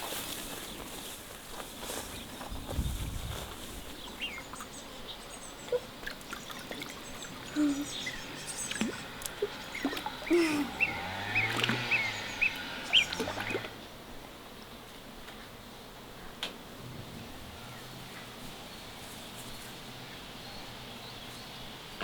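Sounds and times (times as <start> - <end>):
small birds chirping: 1.8 - 13.7.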